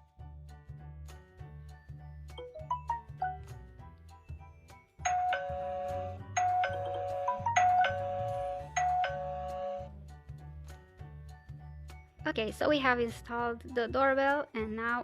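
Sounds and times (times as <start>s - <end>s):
doorbell ding-dong chime: 5.0s - 9.9s.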